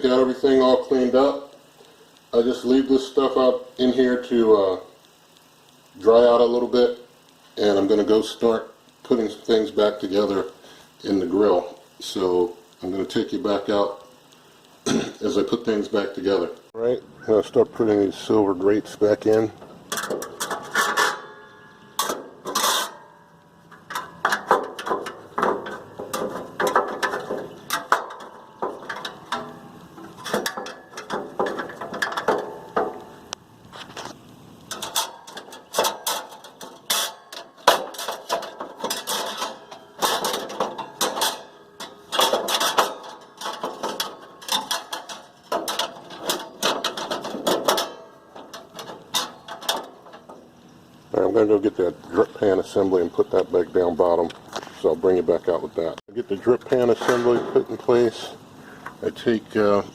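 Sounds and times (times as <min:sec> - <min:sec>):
metal grill grates clanking: 0:17.5 - 0:59.9.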